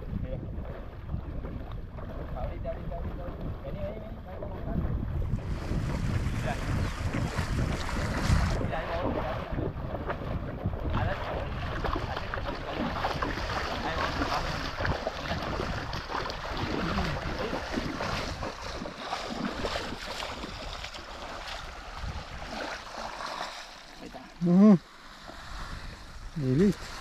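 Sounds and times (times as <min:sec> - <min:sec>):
wind buffeting microphone: 0:00.0 - 0:23.2, 0:24.5 - 0:27.0
shallow river water rushing: 0:00.0 - 0:27.0.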